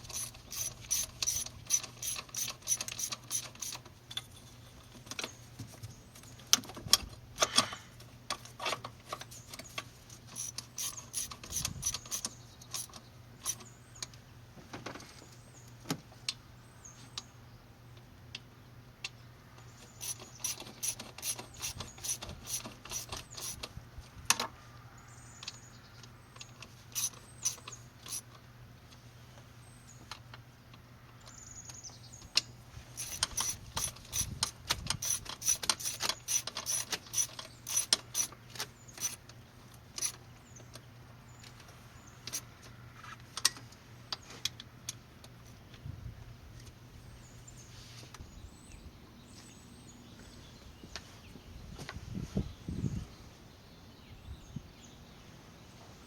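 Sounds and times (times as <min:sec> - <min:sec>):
socket ratchet clicking: 0:00.0 - 0:03.9, 0:10.3 - 0:13.6, 0:20.0 - 0:23.7, 0:27.0 - 0:28.2, 0:33.0 - 0:38.4, 0:39.0 - 0:39.3.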